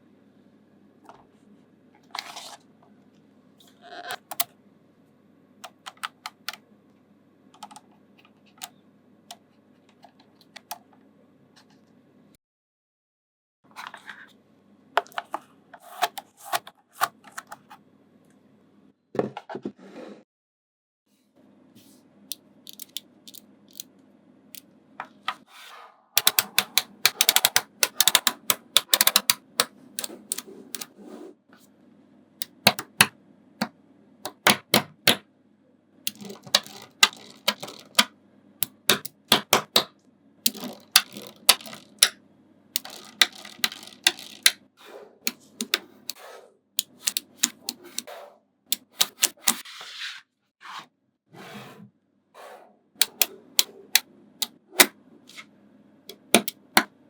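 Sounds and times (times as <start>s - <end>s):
magnetic balls clicking together: 22.7s - 23.8s, 26.2s - 30.9s, 32.4s - 33.1s, 36.1s - 42.2s, 42.8s - 44.6s, 56.1s - 56.9s.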